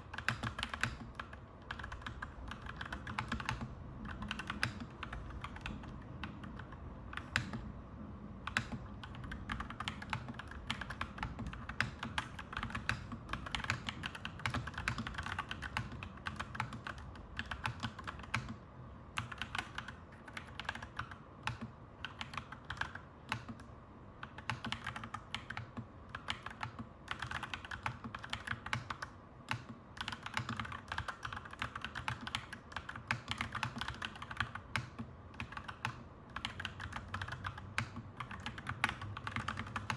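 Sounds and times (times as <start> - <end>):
mechanical keyboard typing: 0.0 - 7.7, 8.4 - 39.9.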